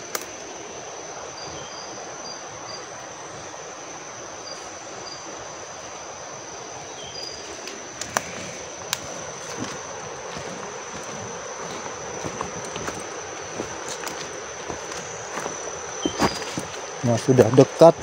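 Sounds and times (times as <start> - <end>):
broad rushing noise: 0.0 - 18.0
insect droning: 0.0 - 18.0
high chirps: 11.7 - 16.9.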